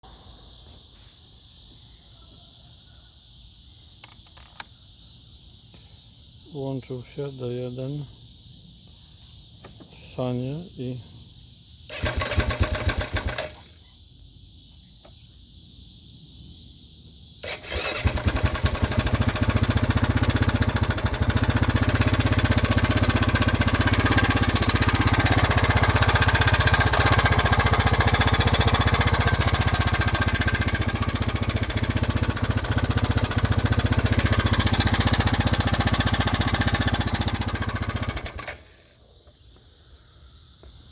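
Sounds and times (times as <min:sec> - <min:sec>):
engine cranking: 0:11.9 - 0:13.7, 0:17.4 - 0:38.8
engine running with knocking: 0:17.7 - 0:38.6.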